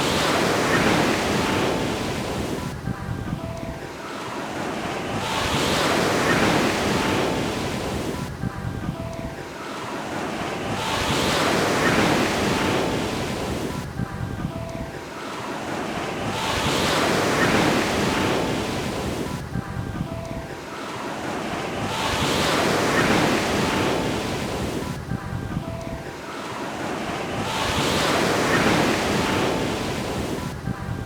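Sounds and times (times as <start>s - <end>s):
ocean surf breaking on beach: 0.0s - 31.0s.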